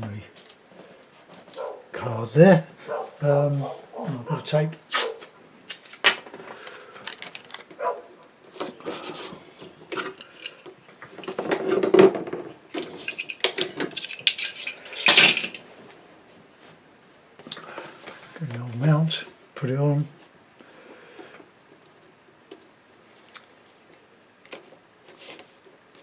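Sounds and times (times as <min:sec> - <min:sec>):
scraping or rustling: 0:08.6 - 0:16.8, 0:24.5 - 0:26.0
small objects clicking and clattering: 0:12.7 - 0:15.6.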